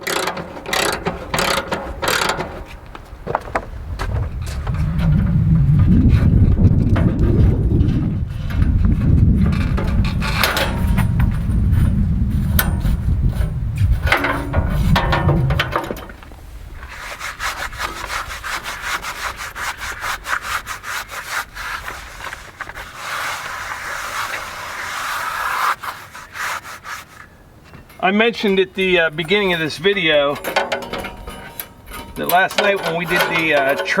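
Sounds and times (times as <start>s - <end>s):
loud low rumble with knocks: 3.2s - 16.2s
scraping strokes on saw blade: 16.8s - 27.4s, 31.2s - 34.0s.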